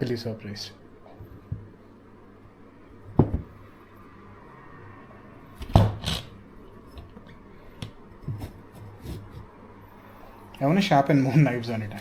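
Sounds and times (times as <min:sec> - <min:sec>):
knocks on a hard surface: 0:03.2 - 0:03.5.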